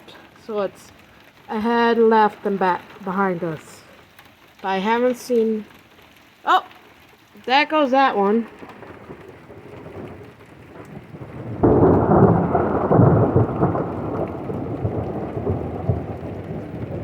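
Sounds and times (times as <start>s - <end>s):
thunder rumbling: 0.0s - 3.8s, 7.4s - 17.0s
steady rain: 0.0s - 17.0s.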